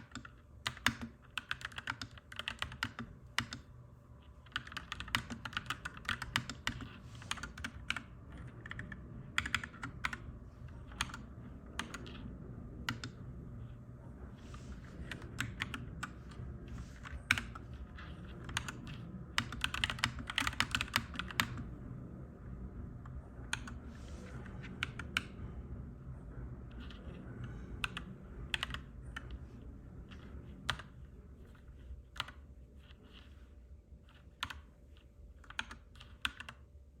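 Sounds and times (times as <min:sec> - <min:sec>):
mechanical keyboard typing: 0:00.0 - 0:03.7, 0:04.4 - 0:12.2, 0:12.8 - 0:13.2, 0:14.9 - 0:16.4, 0:17.0 - 0:21.7, 0:23.5 - 0:25.4, 0:27.8 - 0:29.4, 0:30.6 - 0:31.0, 0:32.1 - 0:32.4, 0:34.1 - 0:36.6
steady low rumble: 0:00.0 - 0:37.0.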